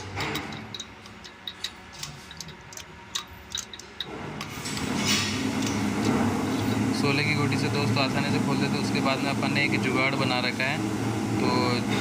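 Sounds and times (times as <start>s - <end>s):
low mechanical hum: 0.0s - 12.0s
ratchet wrench clicking: 0.2s - 4.6s.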